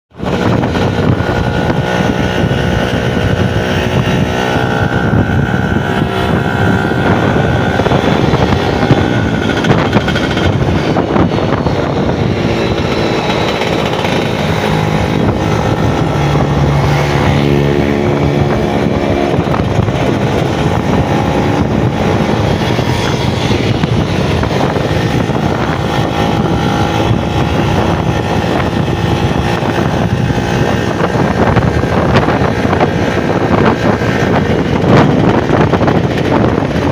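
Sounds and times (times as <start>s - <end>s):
two-stroke engine running: 0.1s - 36.9s.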